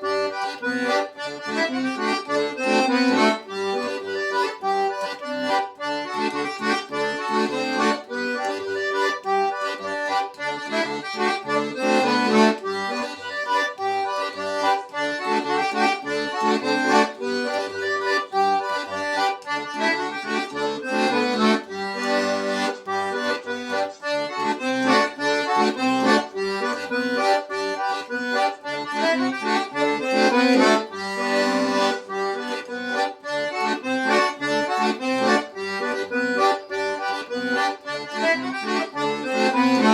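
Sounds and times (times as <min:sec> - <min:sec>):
accordion playing a tune: 0:00.0 - 0:39.9.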